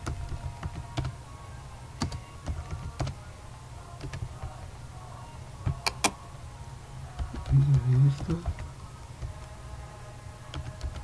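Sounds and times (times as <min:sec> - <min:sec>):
keyboard and mouse clicks: 0:05.7 - 0:06.2.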